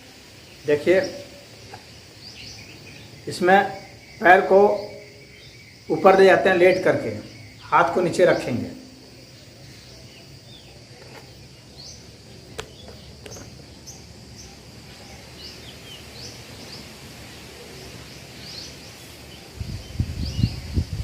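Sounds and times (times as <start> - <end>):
high insect drone: 0.0 - 21.0
bird chirps: 0.3 - 20.9.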